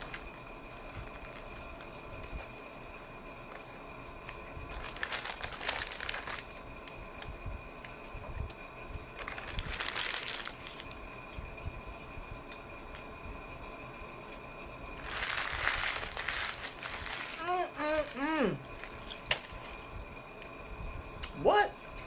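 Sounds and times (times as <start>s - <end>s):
wrapper paper crinkling: 0.0s - 2.5s, 4.7s - 6.6s, 9.2s - 11.1s, 15.0s - 19.8s.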